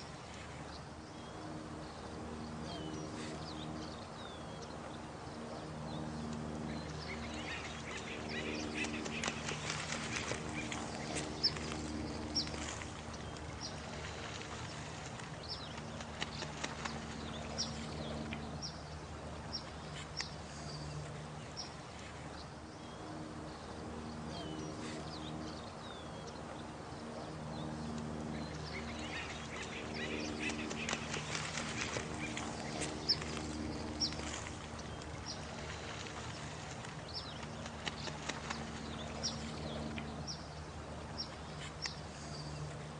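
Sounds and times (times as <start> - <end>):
running water: 6.1 - 22.9, 23.5 - 42.9
clicks and splashy ticks: 6.2 - 18.7, 19.6 - 22.3, 27.8 - 40.3, 41.2 - 42.9.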